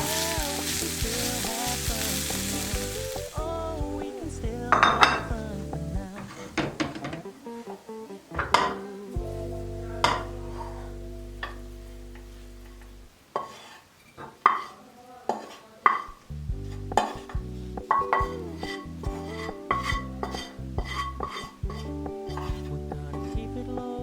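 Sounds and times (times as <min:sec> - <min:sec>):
pop music: 0:00.0 - 0:06.9, 0:08.4 - 0:11.5, 0:17.2 - 0:24.0
kitchenware clinks and knocks: 0:04.7 - 0:05.4, 0:06.2 - 0:07.2, 0:08.4 - 0:08.8, 0:15.3 - 0:16.2.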